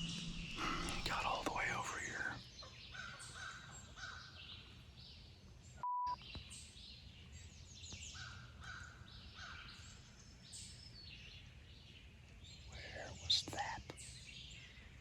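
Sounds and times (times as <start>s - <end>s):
songbirds chirping: 0.0s - 15.0s
pure beep: 5.8s - 6.2s.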